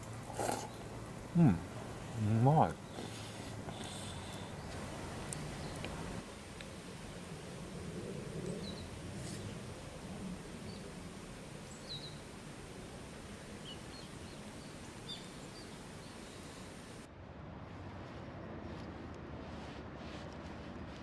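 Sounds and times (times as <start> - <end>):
outdoor background hiss: 0.0 - 21.0
small birds chirping: 0.3 - 17.1.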